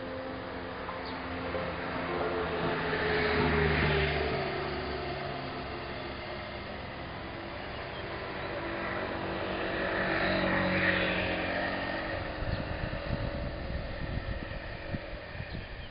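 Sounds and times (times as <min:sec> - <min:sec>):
vehicle passing by: 0:00.0 - 0:15.9
low rumbling: 0:04.1 - 0:15.9.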